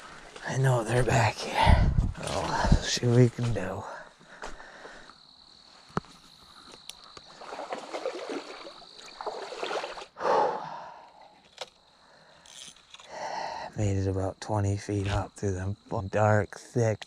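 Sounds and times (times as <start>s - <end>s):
high insect whine: 0.4s - 17.0s
scuffing footsteps: 4.3s - 4.7s.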